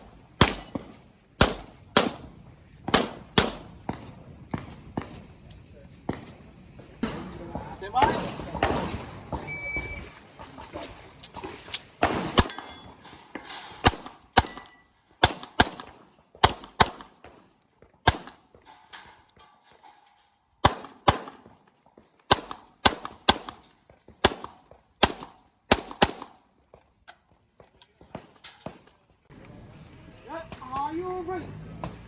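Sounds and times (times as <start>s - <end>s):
handgun shots: 0.4s - 2.3s, 18.1s - 18.4s, 20.6s - 21.6s, 22.3s - 26.4s.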